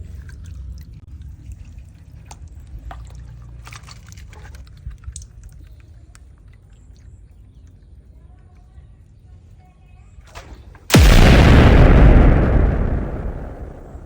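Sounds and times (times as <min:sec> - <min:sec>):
steady low rumble: 0:10.9 - 0:14.0.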